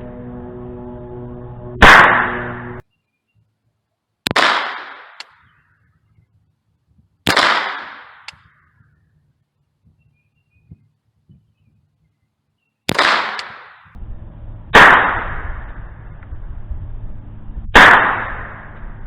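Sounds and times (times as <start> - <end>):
pistol gunshots: 1.8 - 2.4, 4.3 - 5.2, 7.3 - 8.4, 12.9 - 13.9, 14.8 - 15.4, 17.7 - 18.7
gunshot echo: 1.8 - 2.8, 4.3 - 5.2, 7.3 - 8.4, 12.9 - 14.0, 14.7 - 15.8, 17.7 - 18.8.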